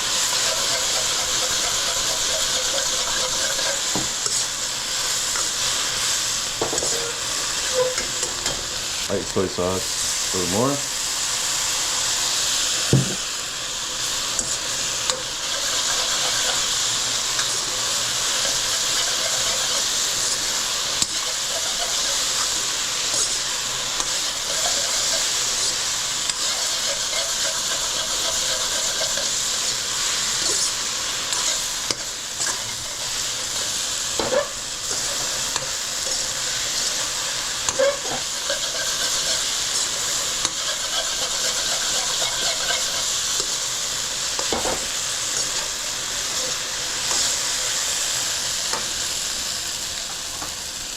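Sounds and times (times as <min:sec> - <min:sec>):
food sizzling in a hot pan: 0:00.0 - 0:50.9
utensil knocking against pan: 0:13.0 - 0:13.2.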